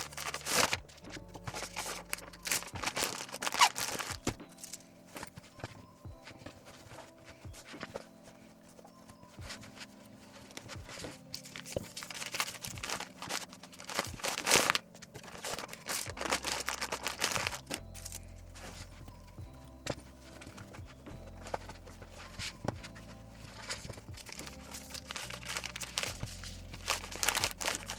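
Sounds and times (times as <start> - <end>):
packaging tearing: 0.0 - 0.9, 1.5 - 4.8, 11.4 - 17.8, 23.6 - 27.9
packaging crinkling and rustling: 0.0 - 27.9.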